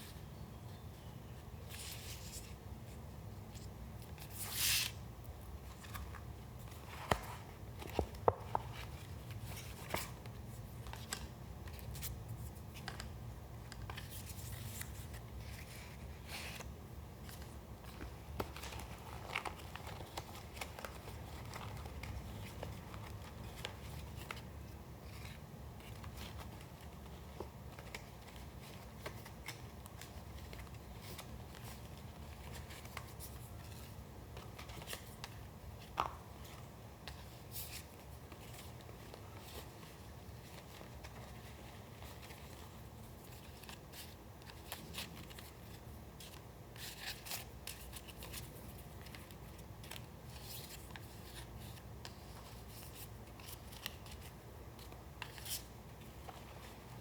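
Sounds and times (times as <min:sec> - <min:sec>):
paper rustling: 0:13.7 - 0:57.0.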